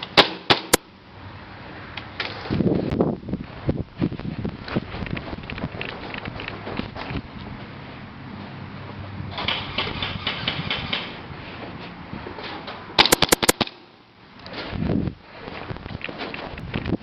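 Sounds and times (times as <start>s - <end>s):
airsoft gun full-auto burst: 13.1s - 13.6s
soft rapid clicking: 13.1s - 13.6s.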